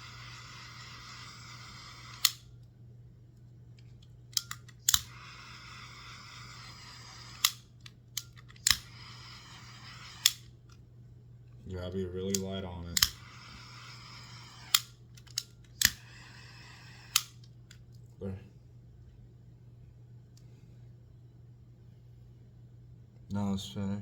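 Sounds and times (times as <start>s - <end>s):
cooking torch hissing: 0.0s - 2.4s, 5.0s - 7.6s, 8.8s - 10.4s, 13.0s - 14.8s, 15.9s - 17.3s
steady low hum: 0.0s - 24.0s
torch trigger click: 0.2s - 2.5s, 4.4s - 10.5s, 12.3s - 17.5s.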